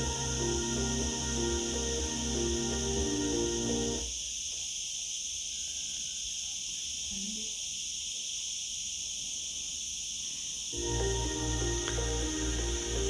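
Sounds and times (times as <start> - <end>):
music from portable speaker: 0.0 - 4.1, 10.8 - 13.0
insects chirring: 0.0 - 13.0.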